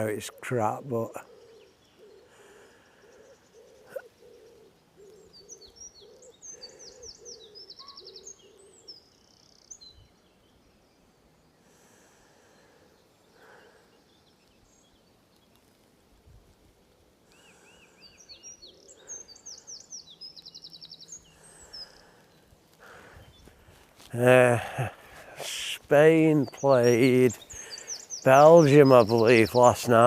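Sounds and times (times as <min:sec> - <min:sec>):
faint outdoor background noise: 0:00.0 - 0:30.0
songbirds chirping and trilling: 0:00.0 - 0:30.0
bird soft low hooting: 0:01.2 - 0:11.8.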